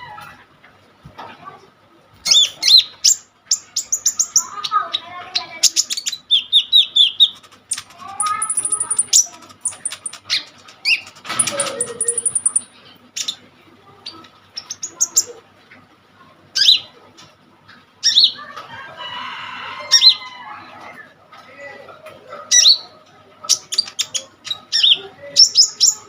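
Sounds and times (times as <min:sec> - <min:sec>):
bird singing high chirps: 0:06.4 - 0:10.2, 0:11.4 - 0:12.7
wings fluttering: 0:07.2 - 0:12.7.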